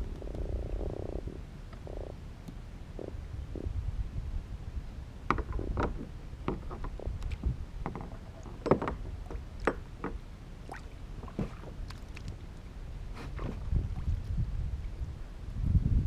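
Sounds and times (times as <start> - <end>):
low rumble: 0.0 - 8.5
water splashing around kayak: 6.6 - 14.4.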